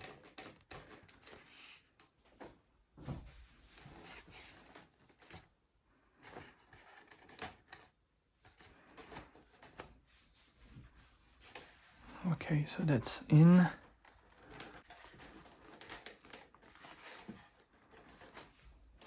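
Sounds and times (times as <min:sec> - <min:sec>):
plastic parts clicking and knocking: 0:00.0 - 0:02.2, 0:06.1 - 0:09.9, 0:13.6 - 0:19.0.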